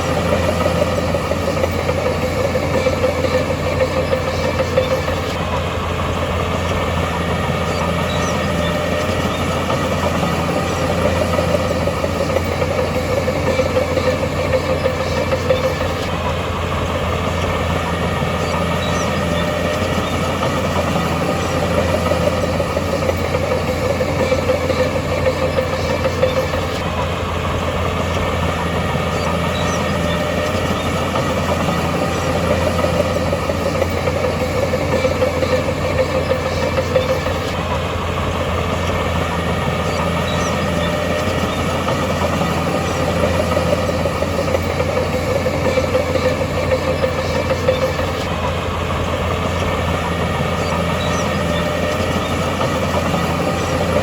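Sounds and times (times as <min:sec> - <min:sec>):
heavy diesel machine engine running: 0:00.0 - 0:54.0.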